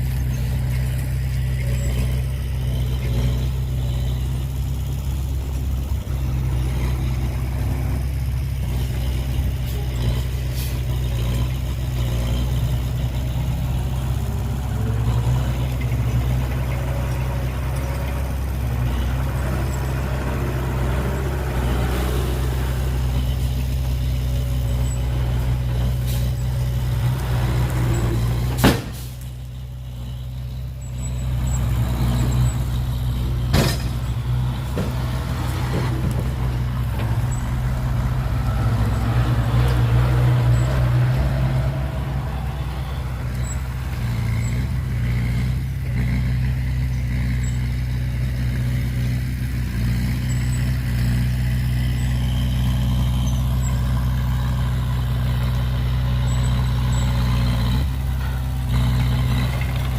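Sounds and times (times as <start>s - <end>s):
diesel truck engine running: 0.0s - 59.9s.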